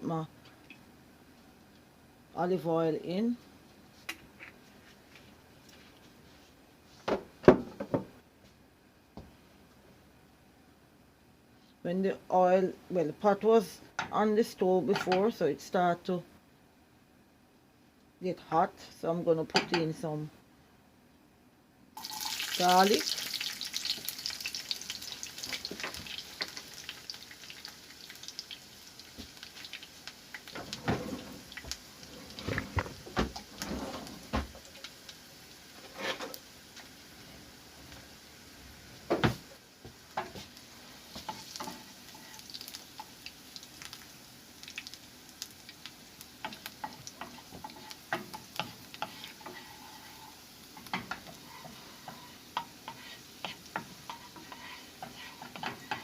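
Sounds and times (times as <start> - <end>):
garlic sizzling in hot oil: 22.0 - 56.0.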